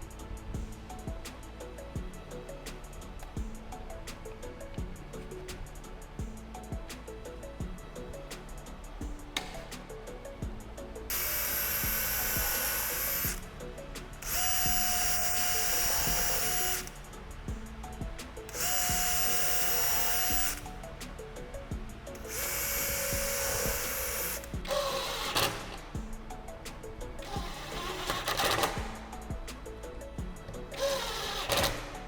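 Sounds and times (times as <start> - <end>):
electric power tool whining: 11.1 - 13.4, 14.2 - 17.0, 18.5 - 20.7, 22.2 - 25.8, 30.8 - 32.0.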